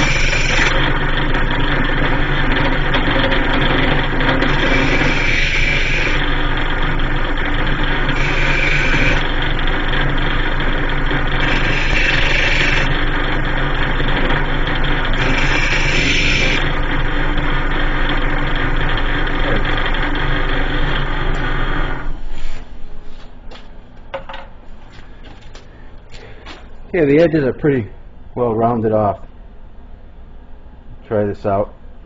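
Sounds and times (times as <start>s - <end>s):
electric grinder running: 0.0s - 22.1s
grinding metal bolt head: 2.3s - 6.4s, 7.6s - 16.7s.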